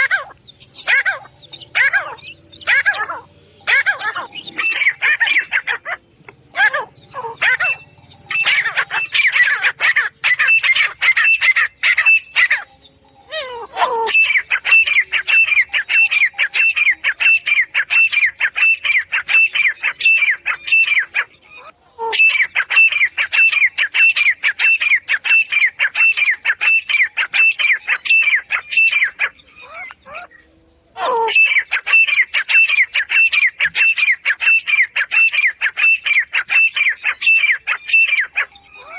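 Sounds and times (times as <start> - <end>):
francolin calling: 0.0 - 38.9.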